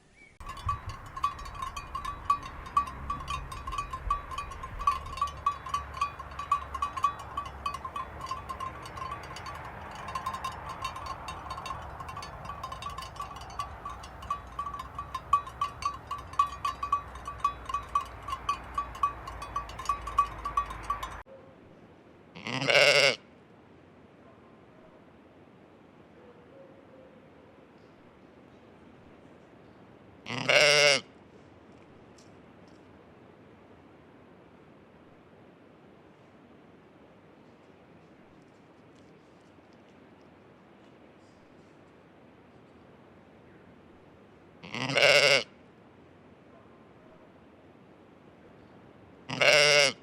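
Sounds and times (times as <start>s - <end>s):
sheep bells clinking: 0.4s - 21.2s
sheep bleat: 22.4s - 23.2s, 30.3s - 31.1s, 44.6s - 45.5s, 49.3s - 50.0s.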